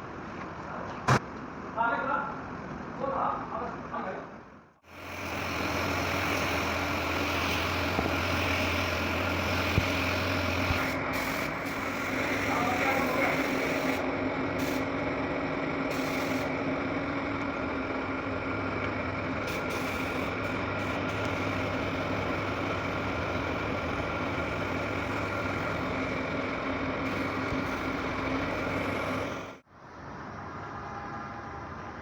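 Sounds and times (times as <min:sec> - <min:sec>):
mechanical drone: 0:04.9 - 0:29.6.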